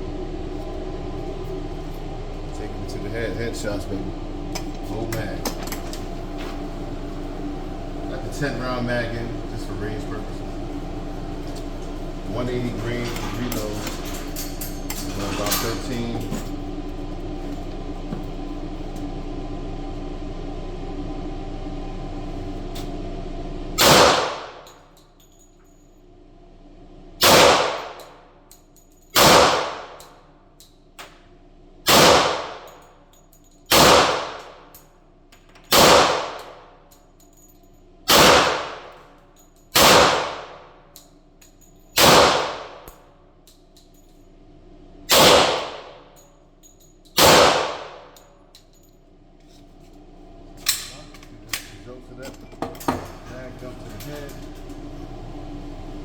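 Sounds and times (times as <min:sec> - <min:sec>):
steady hum: 0:00.0 - 0:56.0
pistol shots: 0:23.8 - 0:24.6, 0:27.2 - 0:28.0, 0:29.2 - 0:30.0, 0:31.9 - 0:32.7, 0:33.7 - 0:34.4, 0:35.7 - 0:36.5, 0:38.1 - 0:38.9, 0:39.8 - 0:40.6, 0:42.0 - 0:42.9, 0:45.1 - 0:46.0, 0:47.2 - 0:48.0.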